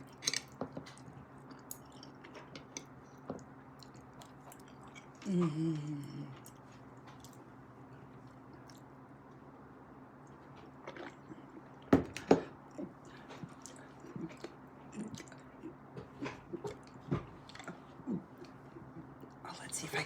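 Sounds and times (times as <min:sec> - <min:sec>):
open-mouthed chewing: 0:03.1 - 0:09.0, 0:12.6 - 0:19.4.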